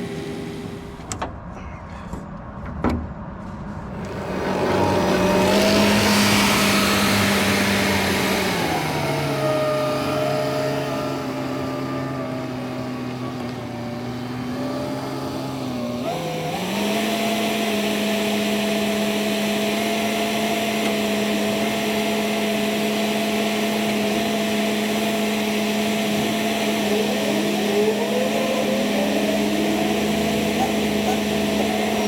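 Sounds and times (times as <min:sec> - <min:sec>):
diesel engine under load: 0:00.0 - 0:01.6, 0:02.2 - 0:32.0
faint rising whines: 0:03.8 - 0:15.8, 0:25.7 - 0:32.0.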